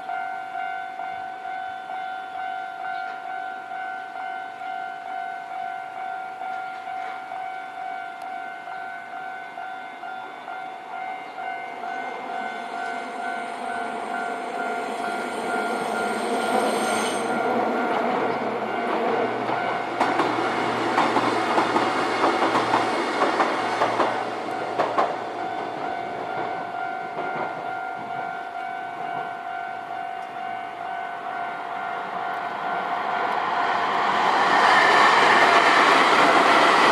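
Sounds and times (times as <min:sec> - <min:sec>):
level-crossing warning bell ringing: 0:00.0 - 0:36.9
electric train passing: 0:00.1 - 0:36.9
wheels clattering over rail joints: 0:17.6 - 0:25.3.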